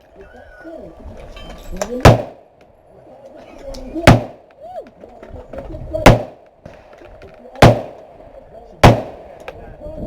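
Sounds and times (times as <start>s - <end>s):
gunshots with echo: 2.1s - 2.4s, 4.0s - 4.4s, 6.1s - 6.4s, 7.6s - 8.0s, 8.8s - 9.4s.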